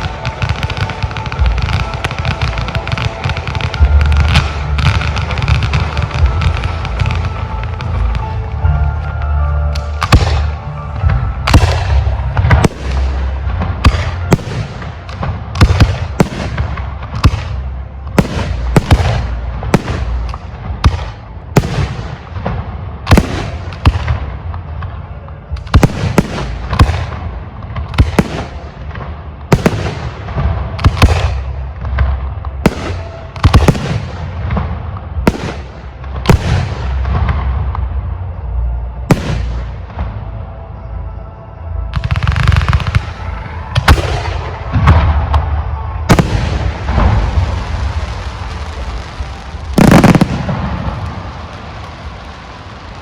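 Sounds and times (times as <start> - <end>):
low rumble and crackle: 0.0 - 53.0
firework shells bursting: 49.7 - 51.6.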